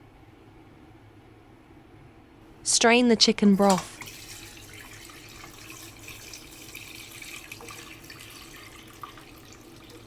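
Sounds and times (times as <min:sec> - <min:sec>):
broth pouring through strainer: 0:03.7 - 0:10.0.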